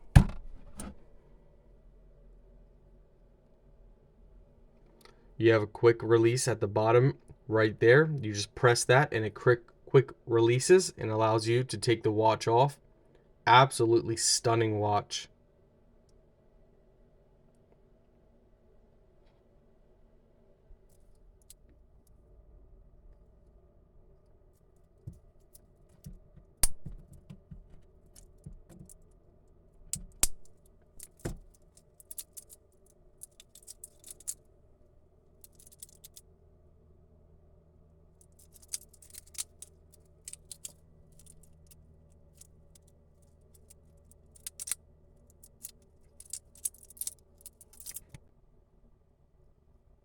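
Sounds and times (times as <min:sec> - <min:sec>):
metal links jingling: 0:31.0 - 0:32.6, 0:33.2 - 0:34.4, 0:35.5 - 0:36.2, 0:38.2 - 0:48.1
watch bracelet clicks: 0:44.4 - 0:44.8.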